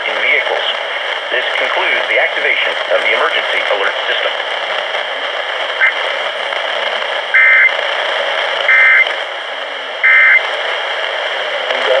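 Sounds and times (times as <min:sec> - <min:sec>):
radio static: 0:00.0 - 0:12.0
two-tone digital warble bursts: 0:07.4 - 0:07.7, 0:10.0 - 0:10.4.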